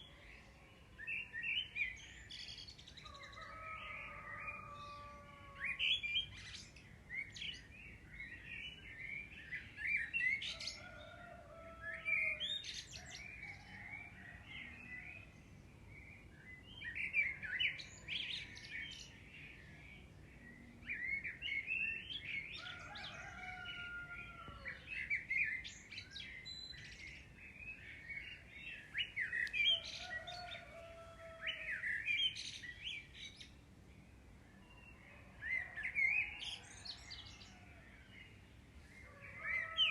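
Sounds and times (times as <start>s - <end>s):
birds chirping: 16.1s - 39.9s.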